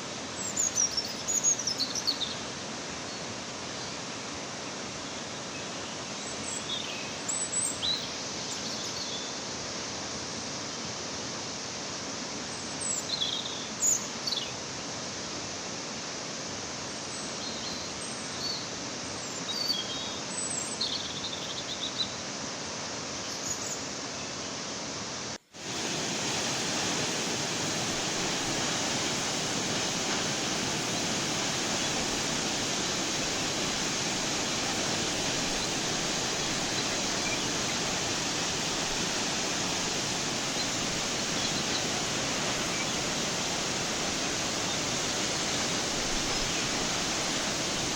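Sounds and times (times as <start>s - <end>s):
waterfall rushing: 24.8s - 47.9s
birds chirping: 29.7s - 47.8s.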